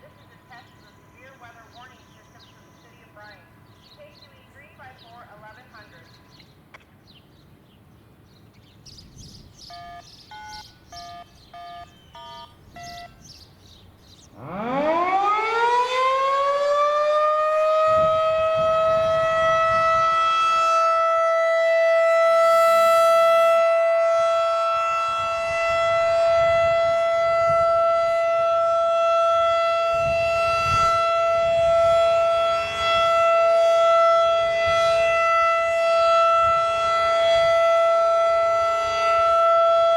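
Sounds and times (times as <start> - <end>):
short electronic beeps: 9.7 - 13.2.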